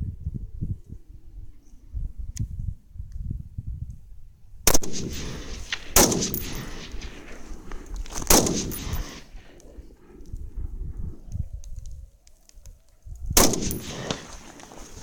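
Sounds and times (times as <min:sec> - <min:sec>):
rifle shots with echo: 0:04.7 - 0:10.2, 0:13.4 - 0:15.0.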